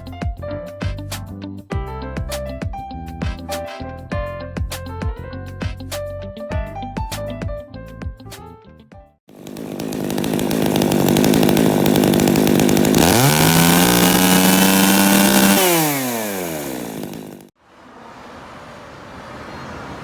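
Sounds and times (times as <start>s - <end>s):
chainsaw engine revving: 9.3s - 17.5s.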